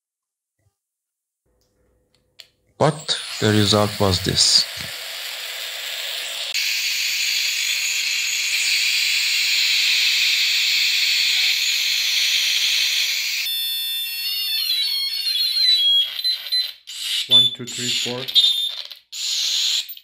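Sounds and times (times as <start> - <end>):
radio receiver static hiss: 2.8 - 4.9, 17.3 - 18.3.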